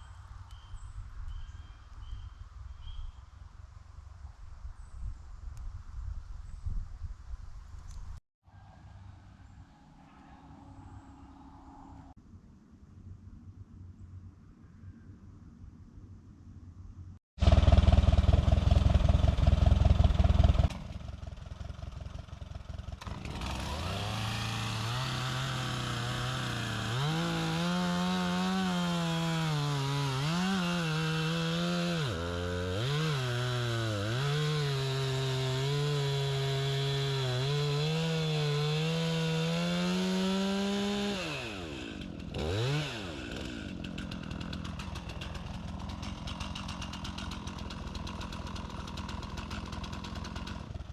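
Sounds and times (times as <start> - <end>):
small gas engine saw revving: 21.8 - 50.9.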